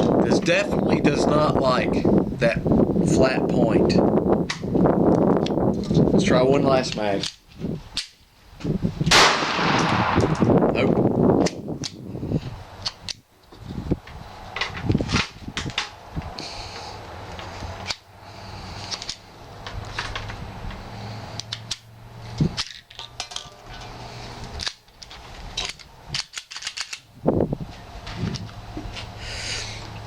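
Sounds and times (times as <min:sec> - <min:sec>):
pistol metallic clicks and clacks: 0:21.4 - 0:21.9, 0:24.6 - 0:27.0.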